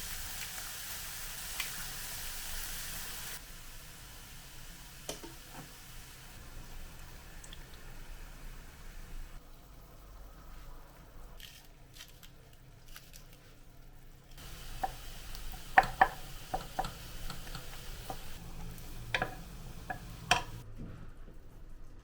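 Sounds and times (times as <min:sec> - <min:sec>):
soft hiss: 0:14.2 - 0:20.6
utensils and dishes clicking: 0:14.4 - 0:20.6.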